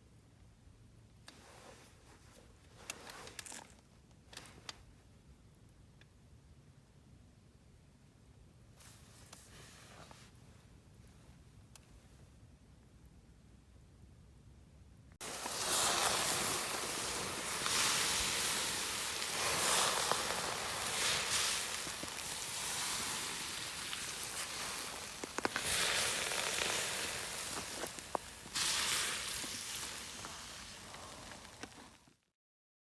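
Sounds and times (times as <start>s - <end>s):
fire crackling pops: 15.2s - 32.1s
campfire hissing: 15.2s - 32.2s.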